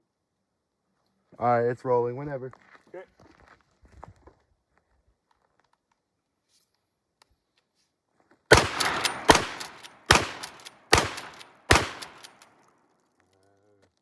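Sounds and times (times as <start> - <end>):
gunshots with echo: 8.5 - 12.4.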